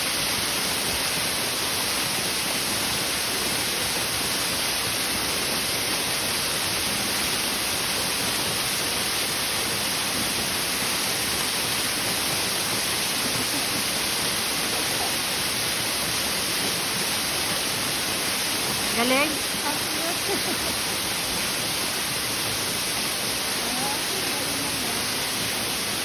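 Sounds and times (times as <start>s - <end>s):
waterfall rushing: 0.0s - 26.0s.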